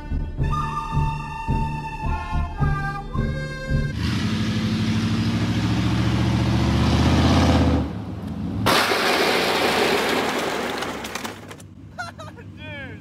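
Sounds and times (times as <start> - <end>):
truck engine revving: 3.6 - 11.5.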